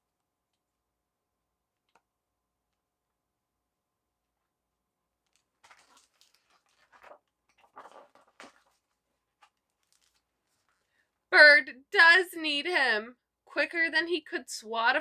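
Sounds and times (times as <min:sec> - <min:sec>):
book page turning: 0:05.3 - 0:10.9.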